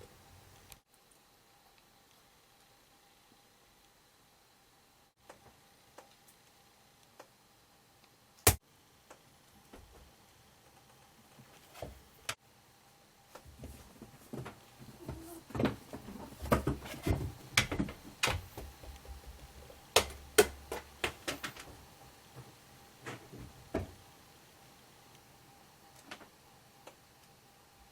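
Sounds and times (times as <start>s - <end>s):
faint steady hum: 0.0s - 27.9s
knocks clicks and thumps: 14.3s - 24.0s.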